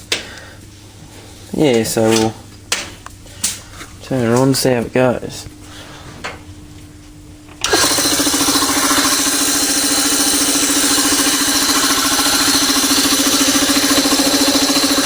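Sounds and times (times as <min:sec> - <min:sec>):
compressor pump pulsing: 0:07.6 - 0:15.0
electric motor starting: 0:07.6 - 0:15.0.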